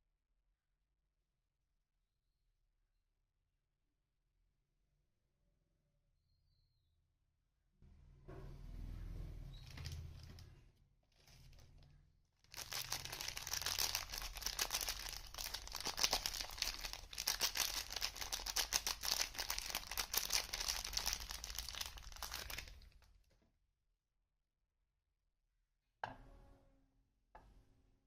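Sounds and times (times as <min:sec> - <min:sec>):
soft handling of packaging: 0:09.6 - 0:23.1
wrapper crinkling and tearing: 0:12.5 - 0:23.1.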